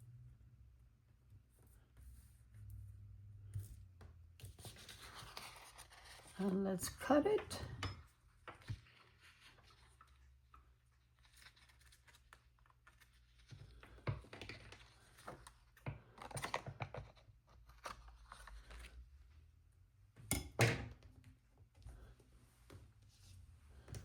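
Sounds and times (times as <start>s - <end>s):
paper rustling: 4.5s - 6.5s, 11.0s - 19.0s.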